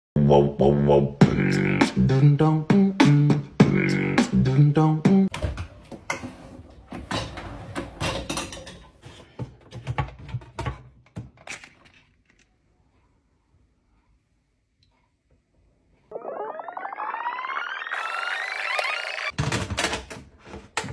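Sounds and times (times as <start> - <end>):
vocal music with beatbox percussion: 0.2 - 5.3.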